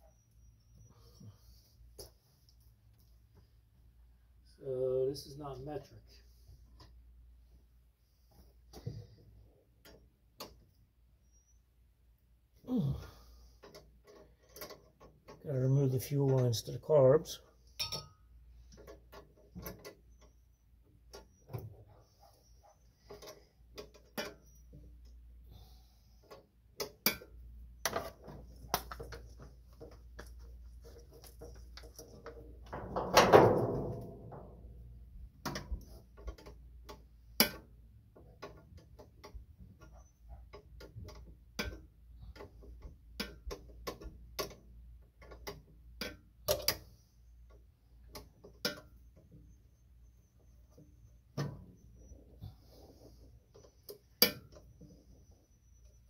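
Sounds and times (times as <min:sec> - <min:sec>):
ringing metal clank: 0:17.8 - 0:18.2.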